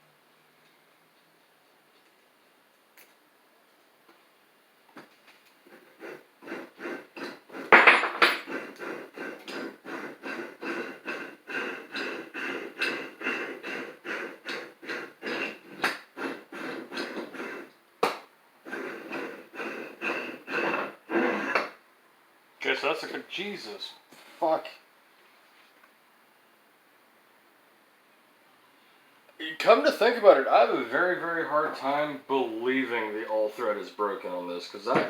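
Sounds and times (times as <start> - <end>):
hammer blows on metal vise: 5.8 - 21.7.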